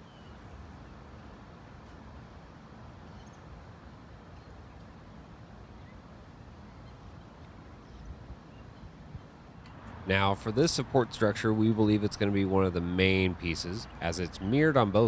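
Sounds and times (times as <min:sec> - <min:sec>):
faint chirps: 0:03.0 - 0:03.6.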